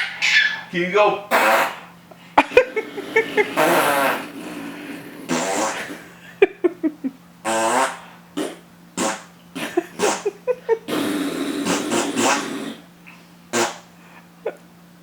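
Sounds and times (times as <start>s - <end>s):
man making fake fart noises: 1.2s - 6.2s, 7.4s - 12.9s, 13.5s - 13.9s.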